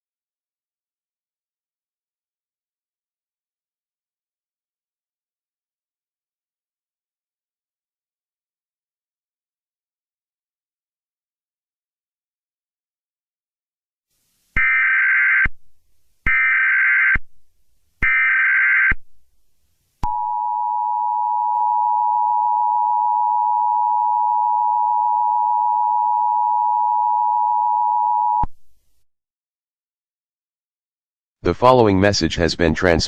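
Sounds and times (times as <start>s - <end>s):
data tone bursts: 20.0s - 28.5s
two-tone attention signal: 20.0s - 28.5s.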